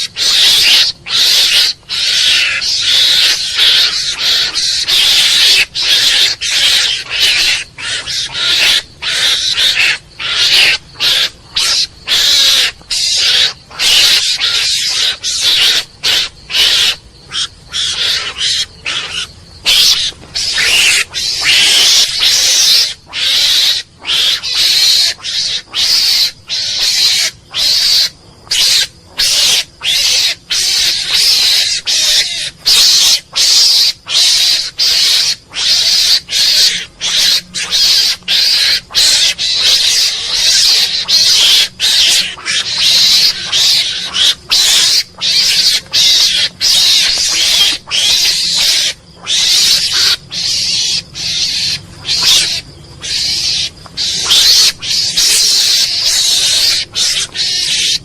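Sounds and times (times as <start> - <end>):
mongoose harsh calls: 0.0 - 58.0.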